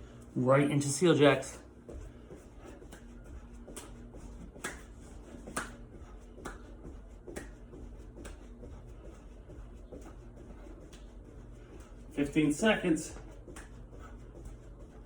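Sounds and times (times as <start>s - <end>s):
hand claps: 2.8s - 8.5s, 13.5s - 13.8s.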